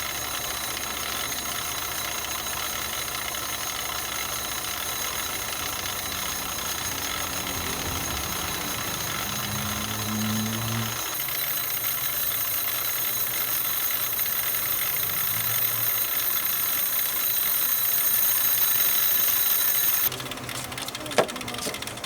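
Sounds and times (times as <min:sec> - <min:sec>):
abrasive whine on metal disc: 0:04.2 - 0:20.1.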